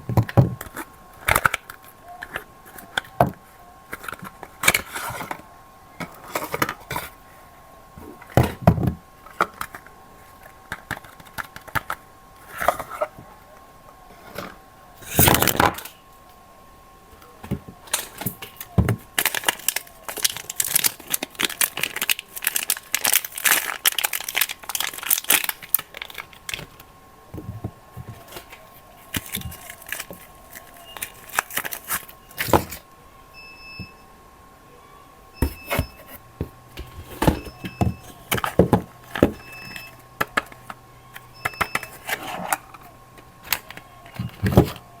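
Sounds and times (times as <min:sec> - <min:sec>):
faint steady hum: 0:00.0 - 0:45.0
wrapper crinkling and tearing: 0:17.9 - 0:26.8, 0:28.2 - 0:32.8.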